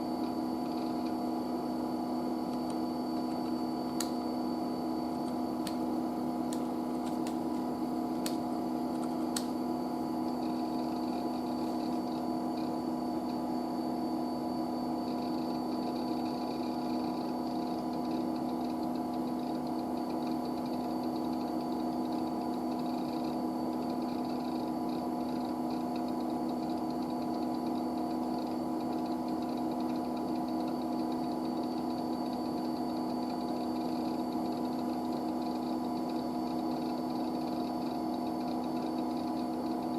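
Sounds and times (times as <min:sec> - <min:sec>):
machine mechanical hum: 0:00.0 - 0:39.9
sharp clicks: 0:02.5 - 0:04.2, 0:08.2 - 0:09.6.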